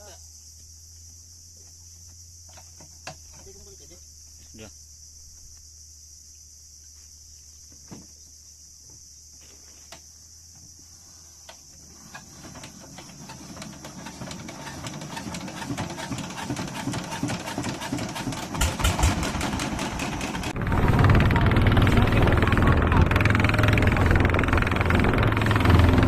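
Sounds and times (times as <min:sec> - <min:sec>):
insects chirping: 0:00.0 - 0:17.3
small engine rattling: 0:11.8 - 0:26.0.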